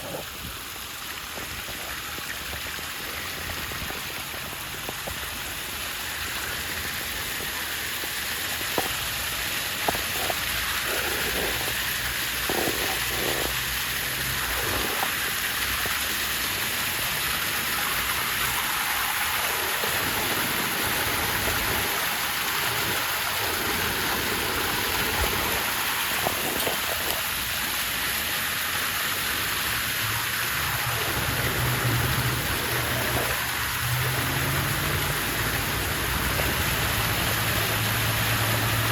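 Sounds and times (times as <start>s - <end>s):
waterfall splashing: 0.0s - 38.9s.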